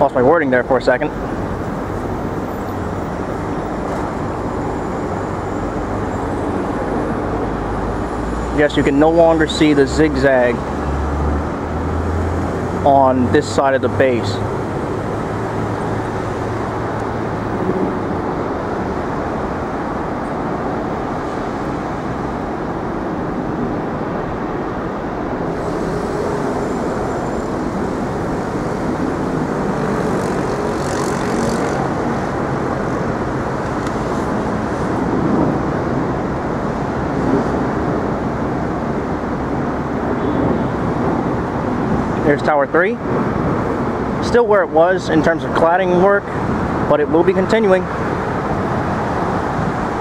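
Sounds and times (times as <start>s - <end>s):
city street traffic: 0.0s - 50.0s
high hiss: 25.6s - 29.2s.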